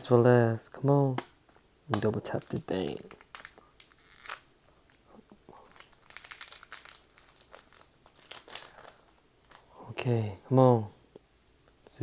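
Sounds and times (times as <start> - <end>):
wrapper tearing and crinkling: 2.0 - 5.0, 5.6 - 9.7.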